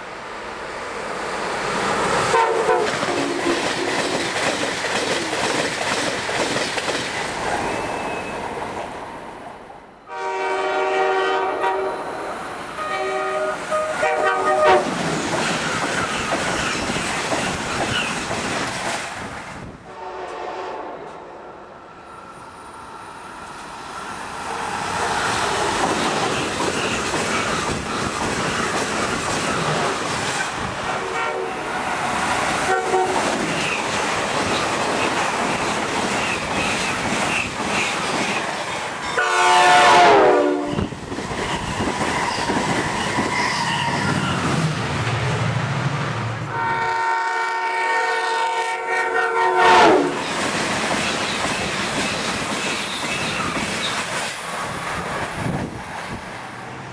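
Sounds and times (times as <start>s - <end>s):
train wheels rushing on rails: 0.0s - 9.2s, 10.2s - 56.9s
train clickety-clack: 1.8s - 8.2s, 13.6s - 19.7s, 24.7s - 45.6s, 48.2s - 56.5s
train air horn blasts: 2.3s - 3.9s, 10.1s - 12.2s, 12.8s - 14.9s, 19.9s - 21.2s, 30.9s - 31.7s, 32.6s - 33.3s, 39.2s - 40.9s, 46.5s - 50.2s.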